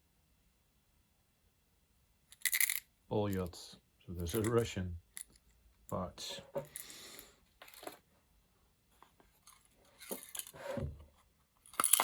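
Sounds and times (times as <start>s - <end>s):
metal watch parts rattling: 2.4s - 2.8s, 4.2s - 4.6s, 11.6s - 12.0s.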